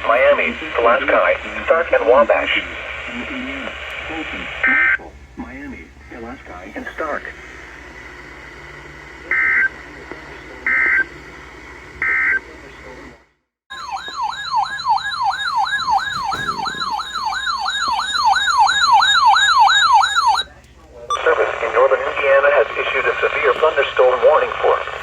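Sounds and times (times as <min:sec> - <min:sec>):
radio receiver hiss: 0:00.0 - 0:04.8, 0:21.1 - 0:25.0
alert data bursts: 0:13.7 - 0:20.5
siren-like alert tone: 0:13.7 - 0:20.5.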